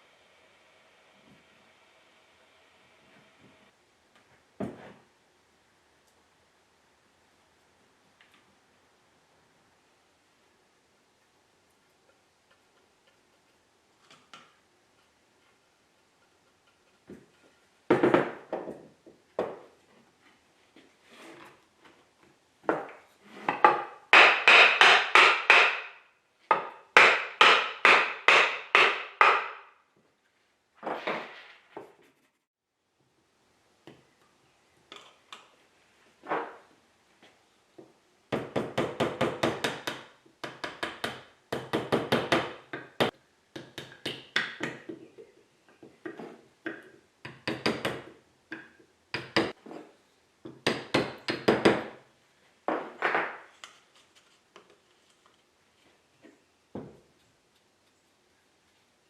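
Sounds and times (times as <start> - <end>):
hammer tapping on wood: 26.5 - 29.6.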